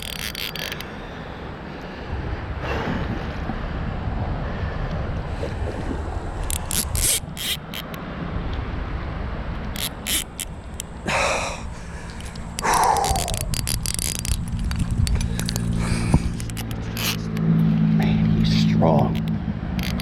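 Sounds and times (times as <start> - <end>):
sharp clicks: 0.0 - 0.9, 6.4 - 8.0, 9.6 - 17.7, 19.1 - 20.0
wind rumbling on microphone: 0.0 - 20.0
heavy exhaled breaths: 0.8 - 6.5, 11.0 - 13.7, 15.2 - 16.6.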